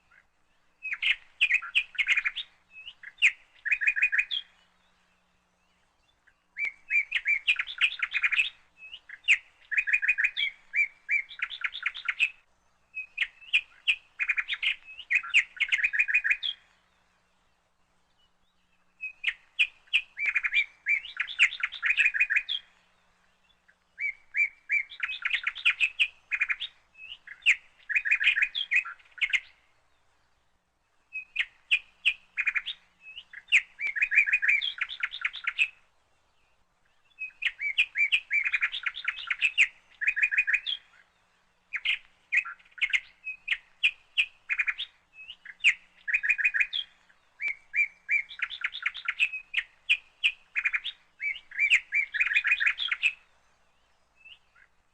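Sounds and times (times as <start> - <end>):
songbird chirping and trilling: 0.0 - 54.9.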